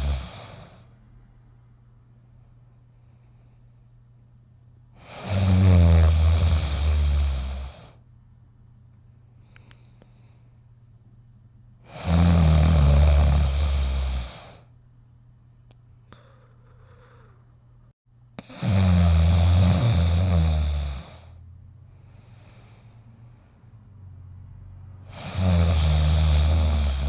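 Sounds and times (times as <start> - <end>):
cartoon dog snoring: 0.0 - 0.8, 5.0 - 8.0, 11.8 - 14.6, 18.4 - 21.4, 25.0 - 27.0
faint breathing: 0.0 - 1.0, 2.3 - 4.1, 9.2 - 10.7, 13.1 - 14.8, 16.0 - 18.6, 20.6 - 24.2.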